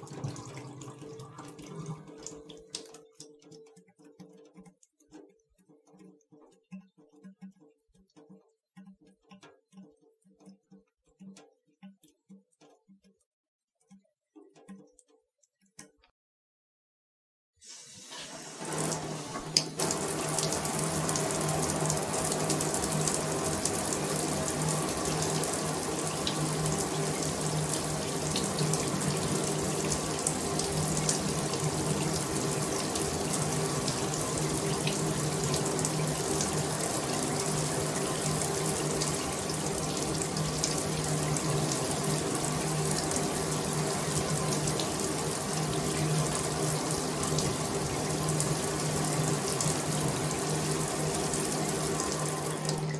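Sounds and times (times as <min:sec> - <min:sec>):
shower water spraying: 0:17.6 - 0:52.9.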